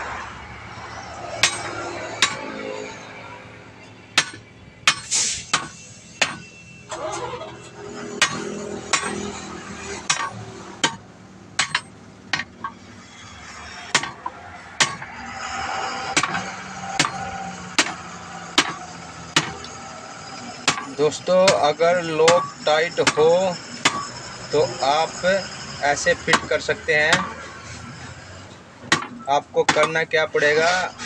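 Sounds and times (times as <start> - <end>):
traffic hum: 0.0 - 31.0
hammer on steel rim: 1.4 - 2.6, 4.2 - 6.6, 8.1 - 9.4, 10.0 - 11.0, 11.6 - 12.8, 13.9 - 15.2, 15.9 - 19.8, 20.6 - 27.4.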